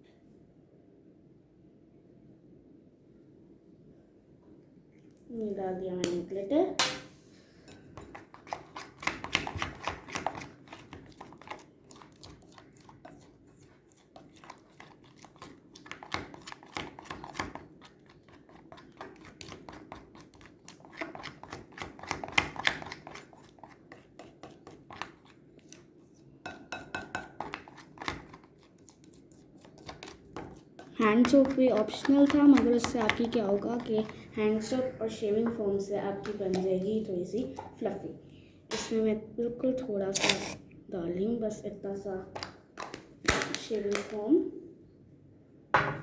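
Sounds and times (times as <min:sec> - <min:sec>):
spoon scraping a bowl: 0:07.6 - 0:25.8, 0:26.5 - 0:34.2, 0:40.1 - 0:40.6.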